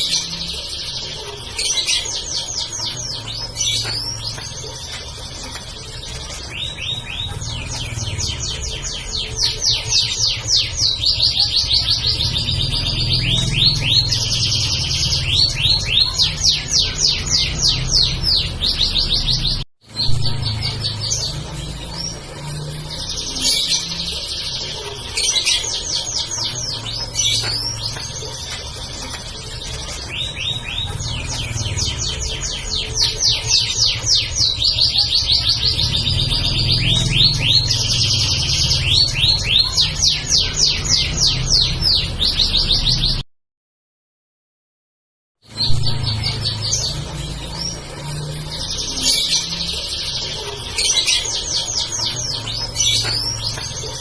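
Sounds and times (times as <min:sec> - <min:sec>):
canary singing trills: 0:00.0 - 0:43.2, 0:45.4 - 0:54.0.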